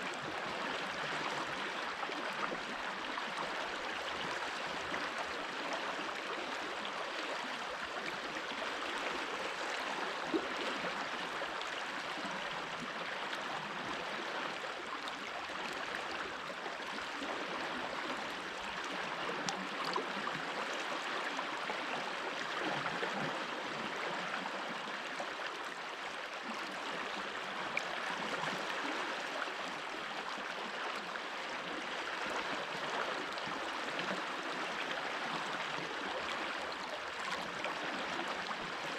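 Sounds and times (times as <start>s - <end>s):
stream gurgling over stones: 0.0s - 38.9s.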